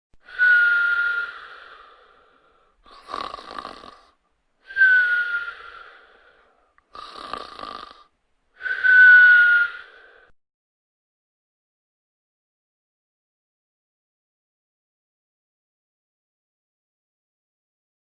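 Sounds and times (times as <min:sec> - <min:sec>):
cartoon snoring with whistle: 0:02.9 - 0:04.1, 0:06.9 - 0:08.1.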